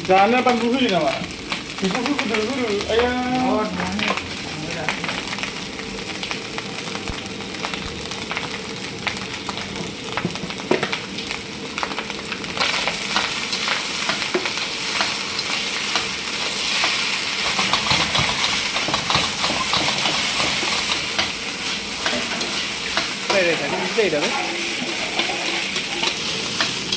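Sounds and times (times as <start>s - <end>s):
food sizzling in hot oil: 0.0s - 26.9s
utensil scraping pan: 16.9s - 26.9s.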